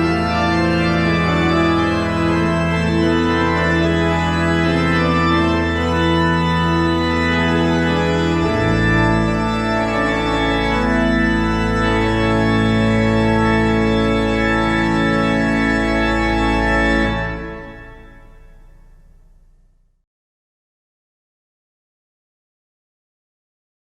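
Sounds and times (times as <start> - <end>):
organ chords: 0.0 - 20.0.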